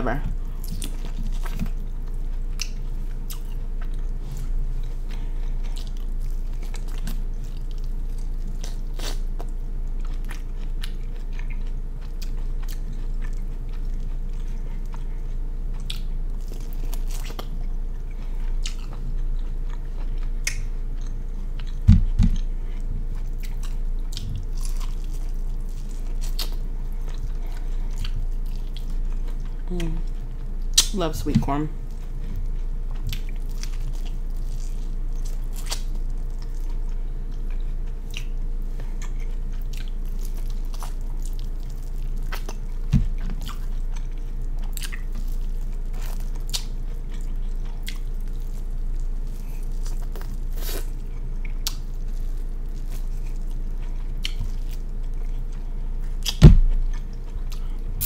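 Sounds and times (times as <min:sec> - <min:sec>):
low steady hum: 0:00.0 - 0:58.0
person biting and chewing: 0:04.8 - 0:15.1, 0:32.4 - 0:57.8
low thump: 0:56.4 - 0:56.7.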